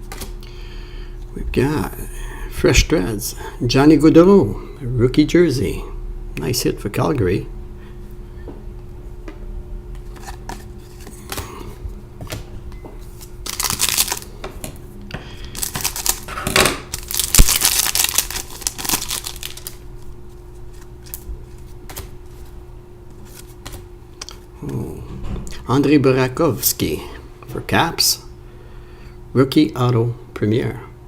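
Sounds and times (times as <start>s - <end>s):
steady low hum: 0.0s - 31.0s
card wrapper crinkling and tearing: 13.2s - 14.4s, 15.5s - 22.0s.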